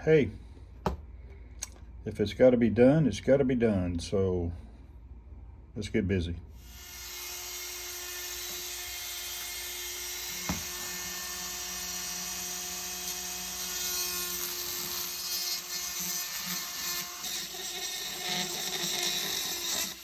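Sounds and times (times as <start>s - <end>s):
short knock: 0.8s - 1.1s
power grinder grinding metal: 6.6s - 20.0s.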